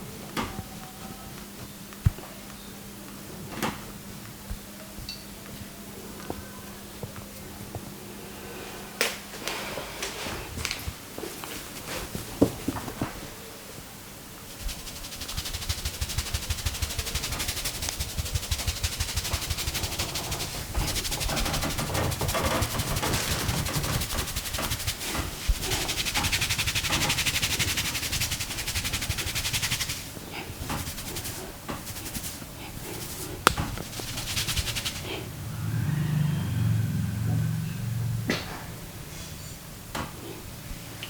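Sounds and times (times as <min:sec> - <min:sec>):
hands rubbing hair: 0:14.5 - 0:35.3.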